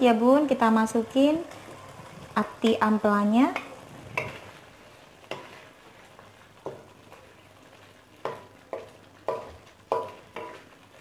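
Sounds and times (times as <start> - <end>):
sauce bubbling: 0.9 - 11.0
spatula knocking against metal pan: 8.2 - 10.6.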